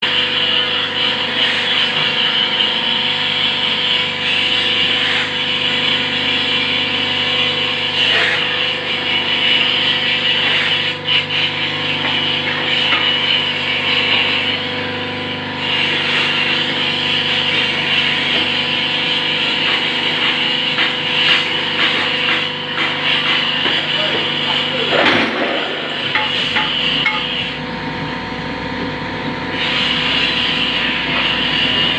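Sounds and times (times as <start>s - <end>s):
hydraulic press motor and pump hum: 0.0s - 31.9s
hiss: 29.5s - 31.9s.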